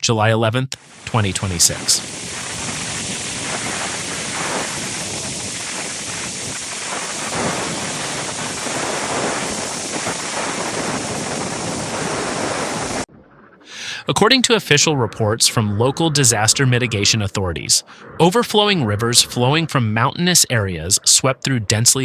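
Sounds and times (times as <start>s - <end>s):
rushing water roar: 0.8s - 13.1s.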